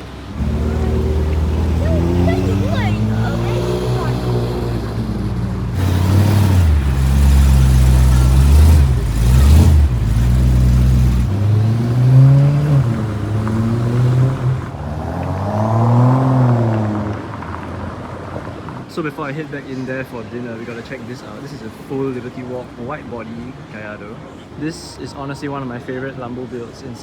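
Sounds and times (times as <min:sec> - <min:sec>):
sports car engine revving: 0:00.0 - 0:18.0.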